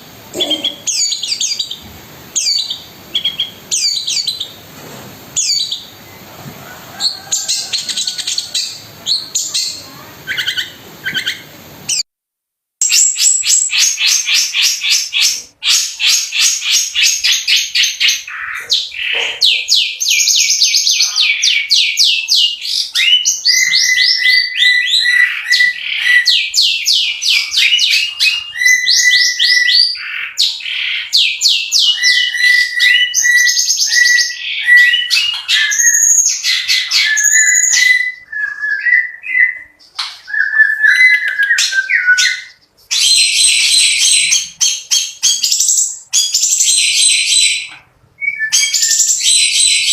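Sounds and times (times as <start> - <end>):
shrike singing: 5.4 - 12.0.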